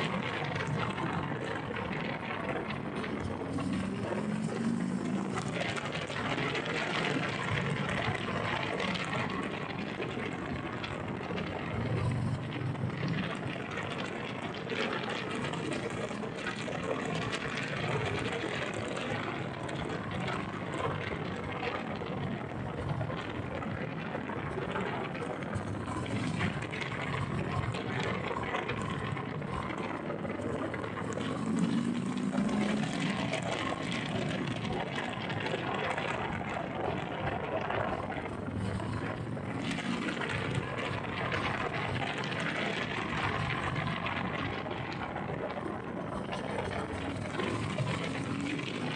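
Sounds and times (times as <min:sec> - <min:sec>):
road noise: 0:00.0 - 0:16.3, 0:37.9 - 0:42.4
wind rushing over microphone: 0:00.0 - 0:48.9.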